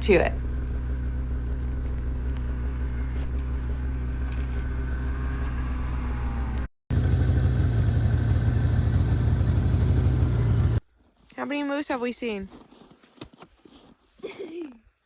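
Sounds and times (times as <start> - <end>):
snowmobile engine running: 6.9 - 10.8.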